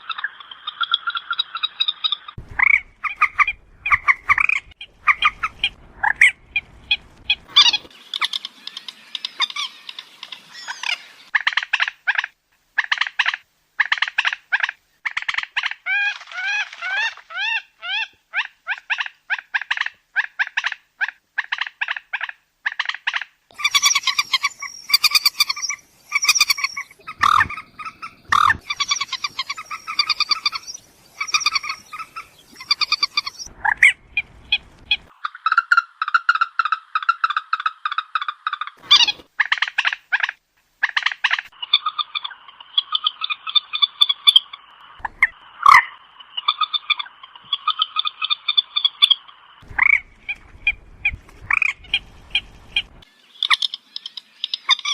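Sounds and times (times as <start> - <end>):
moorhen calls: 0.2 - 54.9.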